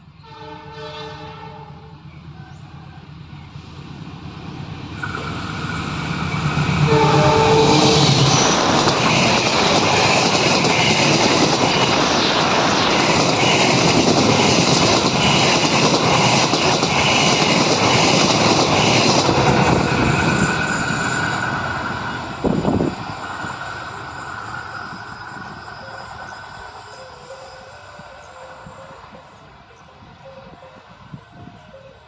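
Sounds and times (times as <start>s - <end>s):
rush of passing train carriages: 0.0s - 32.0s
train horn: 0.2s - 3.0s, 6.7s - 8.4s, 26.8s - 32.0s.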